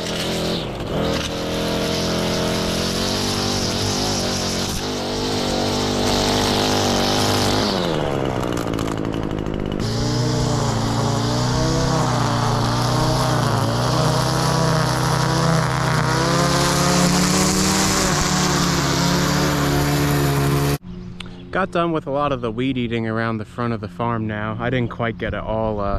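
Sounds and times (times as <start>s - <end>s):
string trimmer engine revving: 0.0s - 20.8s.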